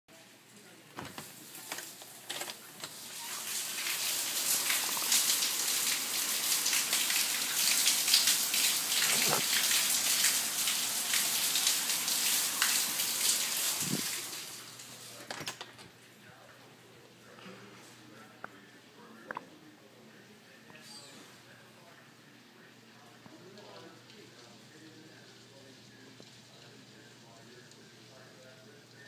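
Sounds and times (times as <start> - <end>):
raindrops pattering: 1.3 - 15.1
heavy rain hissing: 3.0 - 15.2.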